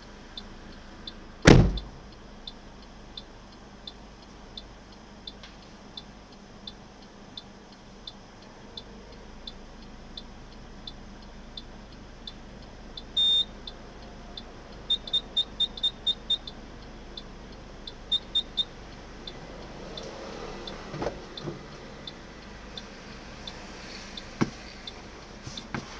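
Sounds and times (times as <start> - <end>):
car warning beeper: 1.4 - 2.0, 13.0 - 13.8, 14.4 - 16.6, 17.8 - 22.2.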